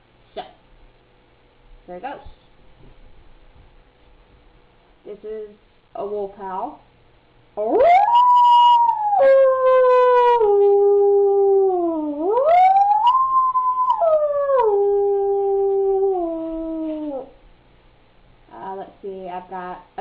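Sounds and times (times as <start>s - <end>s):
person imitating wolf howl: 7.6s - 17.4s.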